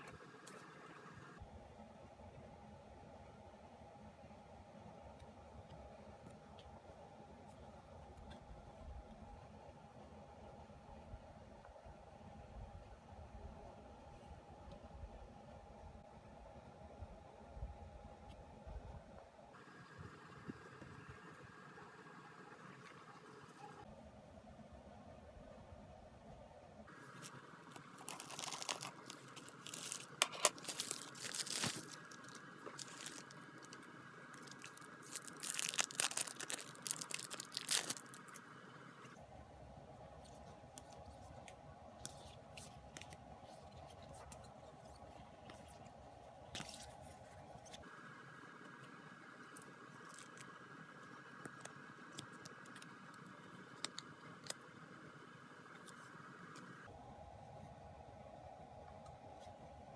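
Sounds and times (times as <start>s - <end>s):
packaging crinkling and tearing: 27.1s - 38.4s.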